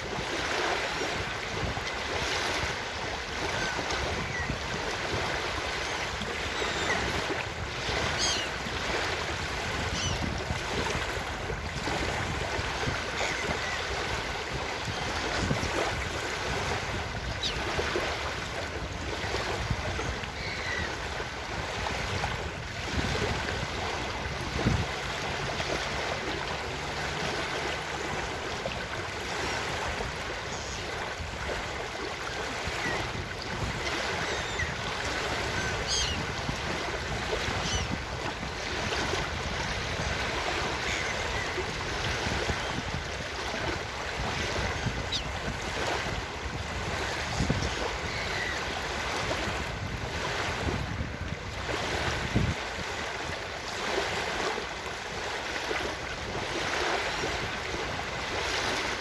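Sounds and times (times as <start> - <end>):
ocean surf on a beach: 0.0 - 59.0
seagull calls: 3.5 - 4.6, 5.8 - 7.2, 7.9 - 8.6, 9.8 - 10.3, 13.2 - 13.9, 17.3 - 17.7, 20.0 - 21.0, 33.9 - 36.3, 37.4 - 38.0, 40.7 - 41.7, 44.7 - 45.4, 48.0 - 48.7.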